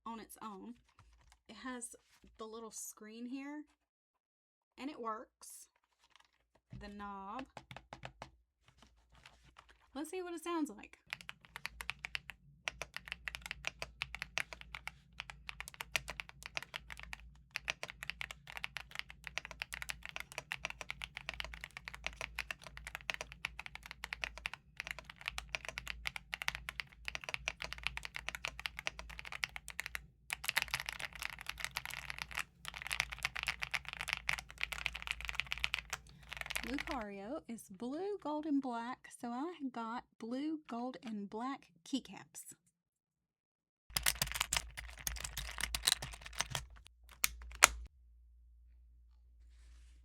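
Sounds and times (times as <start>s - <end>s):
mechanical keyboard typing: 11.0s - 37.0s, 43.9s - 47.9s.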